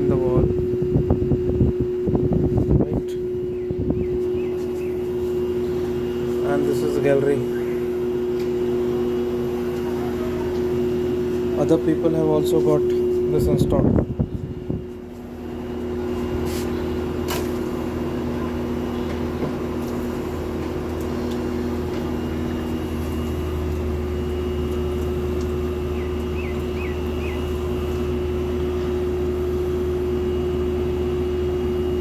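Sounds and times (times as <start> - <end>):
air conditioner unit humming: 0.0 - 32.0.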